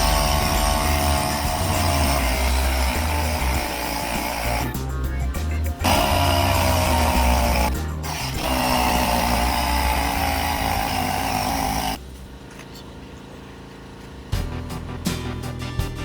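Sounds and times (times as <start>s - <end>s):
power sander running: 0.0s - 4.7s, 5.8s - 12.0s.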